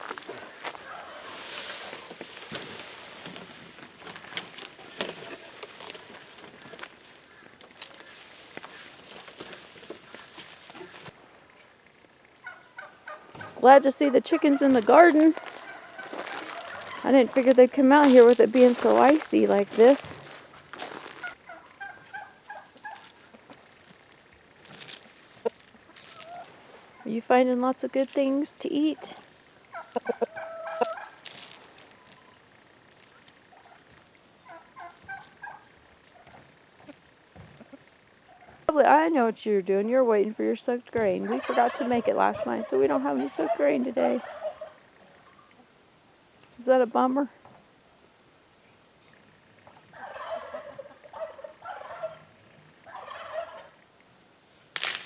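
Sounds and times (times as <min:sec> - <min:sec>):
tree limb cracking off: 0:00.0 - 0:11.1, 0:29.2 - 0:35.6, 0:54.7 - 0:55.0
chickens calling: 0:00.0 - 0:11.2, 0:12.4 - 0:38.7, 0:41.0 - 0:45.7, 0:49.6 - 0:53.8
noisy crunch: 0:00.0 - 0:11.2, 0:14.6 - 0:38.2, 0:54.7 - 0:55.0.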